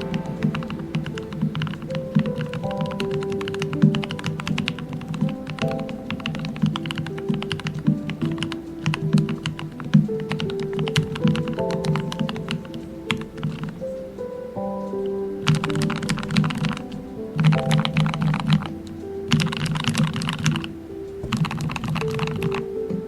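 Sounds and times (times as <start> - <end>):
background music: 0.0 - 23.0
mechanical keyboard typing: 19.3 - 20.6, 21.2 - 22.7.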